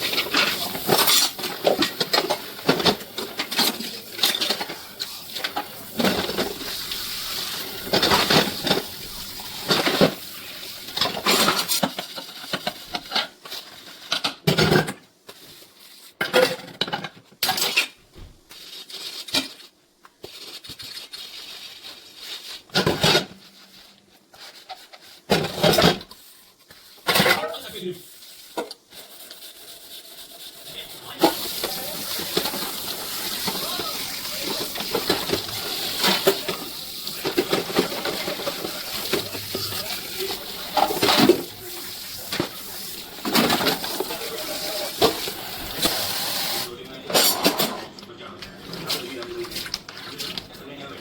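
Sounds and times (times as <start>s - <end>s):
dishes and cutlery clattering: 0.0s - 6.8s, 7.4s - 10.3s, 16.2s - 18.0s, 27.0s - 27.6s, 31.2s - 48.0s
steady hiss: 0.0s - 11.8s, 26.1s - 46.7s.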